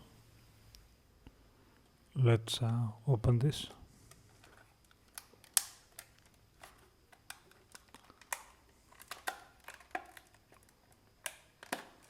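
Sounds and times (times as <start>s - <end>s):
packaging clicks and taps: 4.3s - 12.0s.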